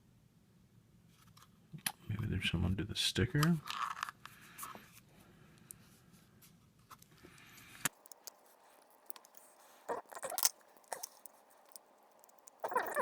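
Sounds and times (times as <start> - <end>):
small tool scraping and rustling: 6.8 - 13.0.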